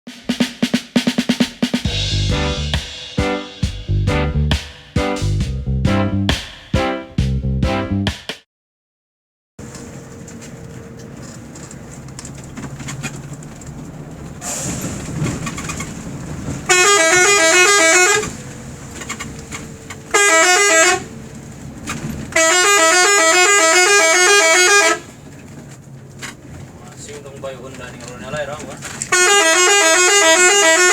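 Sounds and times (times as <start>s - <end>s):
vehicle engine and road noise: 9.6s - 30.9s
warbling multi-note bus horn: 16.5s - 21.3s, 22.1s - 25.2s, 29.1s - 30.9s.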